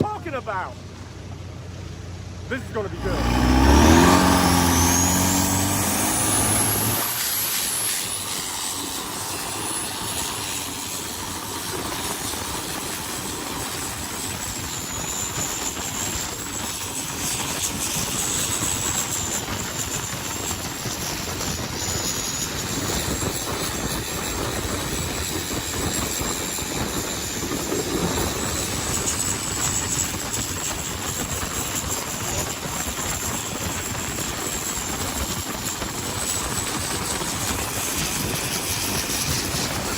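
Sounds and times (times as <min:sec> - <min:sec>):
dense rushing noise: 0:02.5 - 0:07.5
boat diesel engine revving: 0:02.5 - 0:07.8
high whine: 0:02.5 - 0:08.0.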